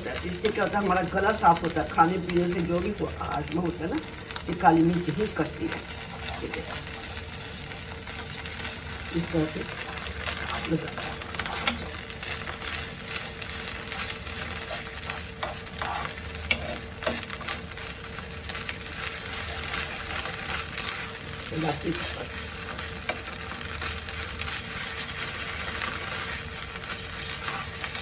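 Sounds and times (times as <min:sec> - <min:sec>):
spices sizzling in a frying pan: 0:00.0 - 0:28.0
spoon scraping a pan: 0:05.7 - 0:21.3, 0:21.9 - 0:28.0.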